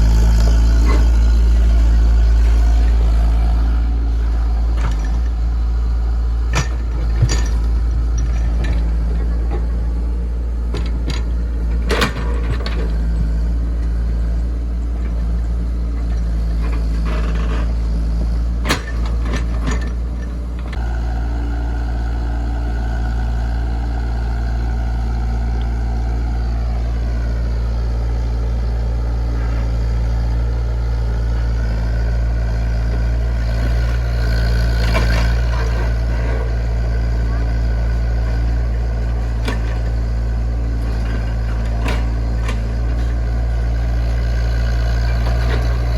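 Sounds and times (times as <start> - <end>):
excavator diesel engine running: 0.0 - 45.9.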